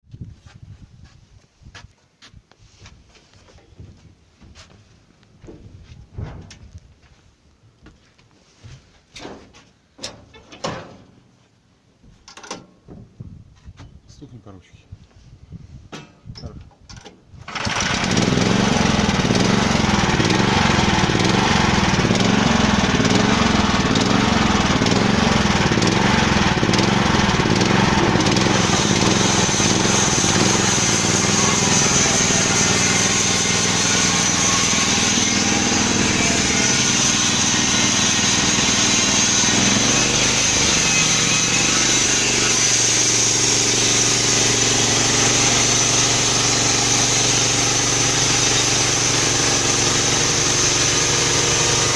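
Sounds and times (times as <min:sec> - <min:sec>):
sawmill petrol engine running: 0:17.4 - 0:51.9.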